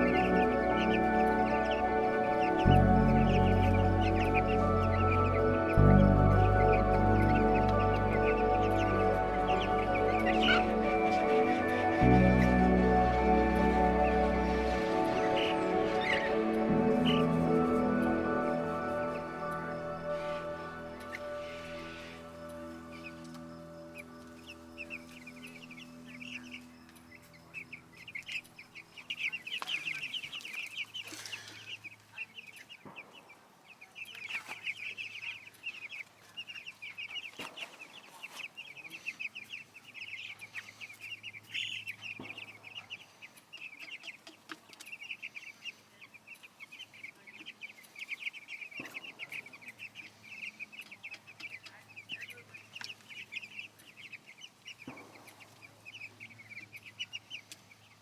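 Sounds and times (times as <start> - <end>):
chicks peeping: 0.0 - 58.0.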